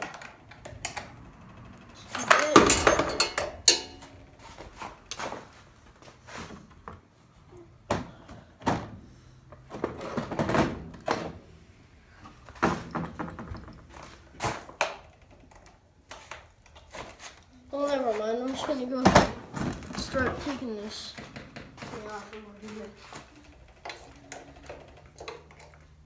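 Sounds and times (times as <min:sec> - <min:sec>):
metal wrenches clinking: 0:02.0 - 0:04.2.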